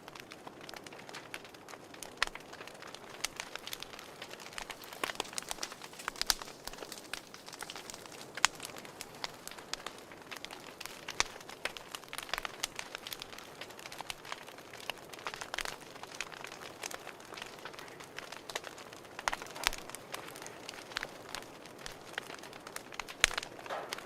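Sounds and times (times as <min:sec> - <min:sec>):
wood fire crackling: 0:00.0 - 0:24.0.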